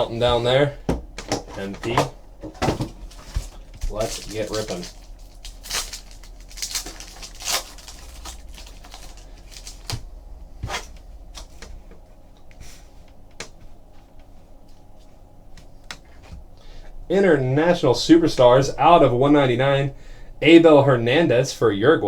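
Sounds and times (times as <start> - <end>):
faint steady hum: 0.0 - 22.0
foil pack crinkling: 2.6 - 11.5.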